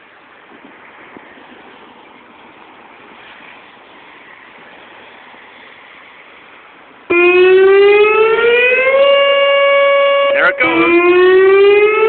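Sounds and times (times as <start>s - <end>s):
rushing background noise: 0.0s - 12.0s
tornado siren winding up: 7.1s - 12.0s.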